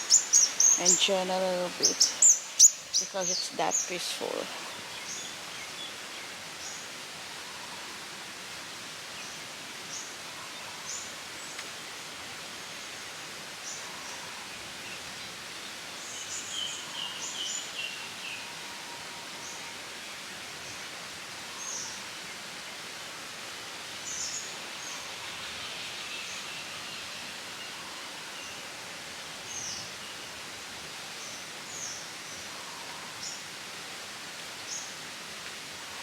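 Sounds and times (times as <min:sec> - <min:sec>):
small birds chirping: 0:00.0 - 0:06.9
outdoor background hiss: 0:00.0 - 0:36.0.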